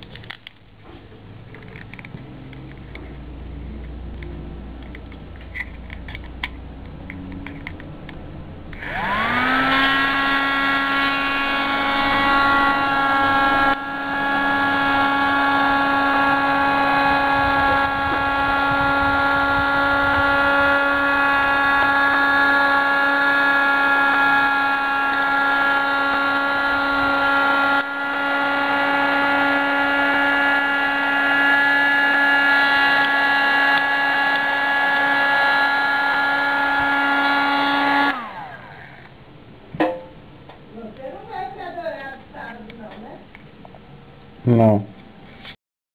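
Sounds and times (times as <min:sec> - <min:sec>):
small vacuum motor whining: 0:08.7 - 0:39.2.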